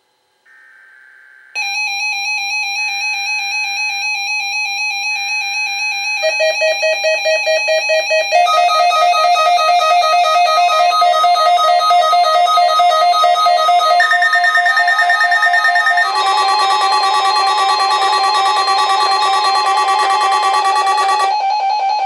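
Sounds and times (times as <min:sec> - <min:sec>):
rapidly pulsing alarm beep: 0:06.2 - 0:22.0
buzzy digital data bursts: 0:14.0 - 0:21.4.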